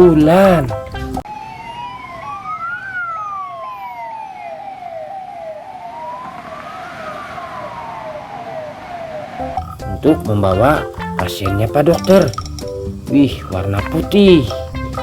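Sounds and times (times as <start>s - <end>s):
ambulance siren wail: 1.2s - 9.6s
fast rising siren yelp: 1.2s - 9.6s.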